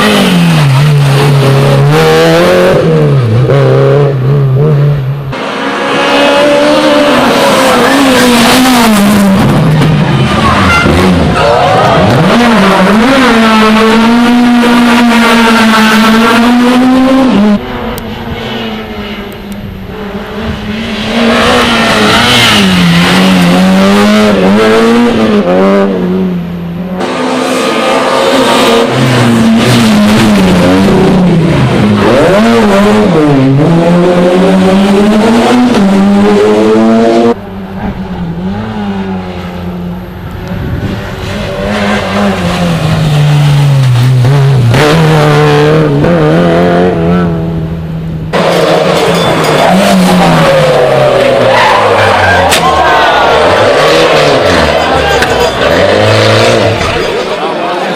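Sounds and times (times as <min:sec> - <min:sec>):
rally car engines revving past: 0:00.0 - 0:57.9.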